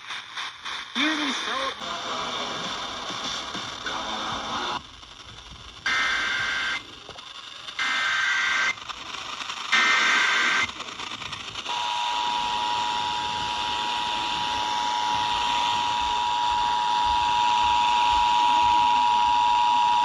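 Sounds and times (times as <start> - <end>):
radio hiss: 0.0 - 20.0
buzzy digital data burst: 4.6 - 20.0.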